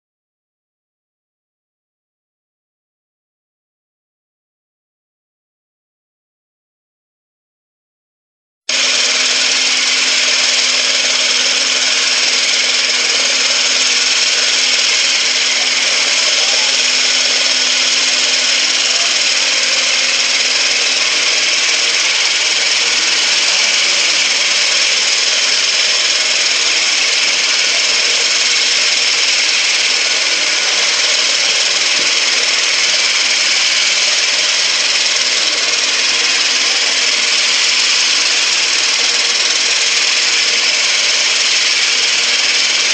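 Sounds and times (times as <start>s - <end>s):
concrete grinder whirring: 8.7s - 42.9s.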